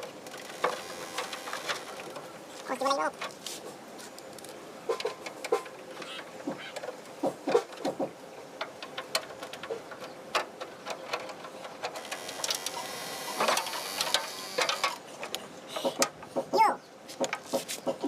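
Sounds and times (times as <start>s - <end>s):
sharp clicks and knocks: 4.3s - 18.0s.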